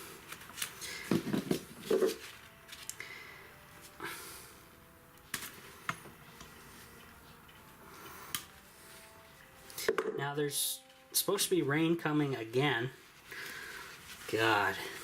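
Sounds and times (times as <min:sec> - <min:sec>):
rustling and scraping of wire: 0:00.0 - 0:04.0.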